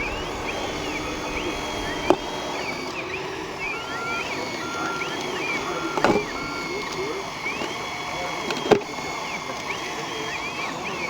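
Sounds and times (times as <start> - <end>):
rising and falling whistling tones: 0.0 - 8.4
electronic reversing beeps: 0.0 - 11.0.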